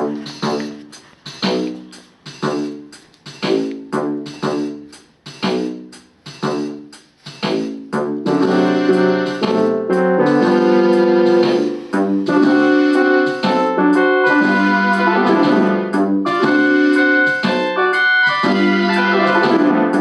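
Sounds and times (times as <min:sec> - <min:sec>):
keyboard playing piano chords: 0:08.0 - 0:20.0.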